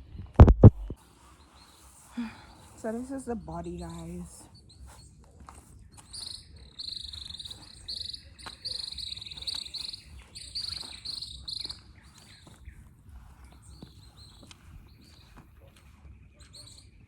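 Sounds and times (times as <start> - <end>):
faint low rumble: 0.0 - 1.0
insects trilling: 6.0 - 12.6.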